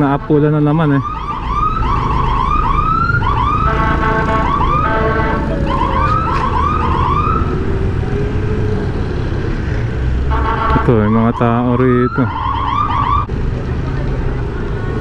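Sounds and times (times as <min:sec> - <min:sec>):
low traffic rumble: 0:00.0 - 0:15.0
fire truck siren yelping: 0:00.7 - 0:09.6, 0:10.3 - 0:13.3
short horn blasts: 0:03.6 - 0:06.6, 0:10.3 - 0:11.2.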